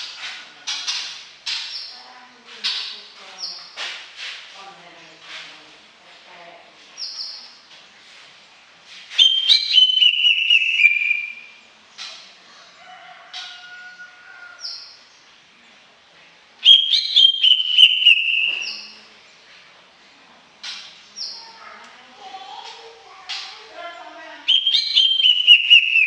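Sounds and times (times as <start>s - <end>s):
bird singing: 9.2s - 12.3s, 16.6s - 19.4s, 23.3s - 26.0s.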